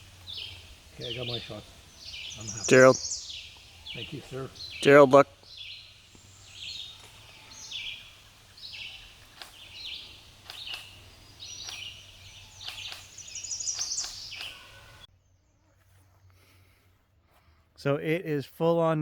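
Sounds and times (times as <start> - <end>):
birds calling: 0.0 - 15.1.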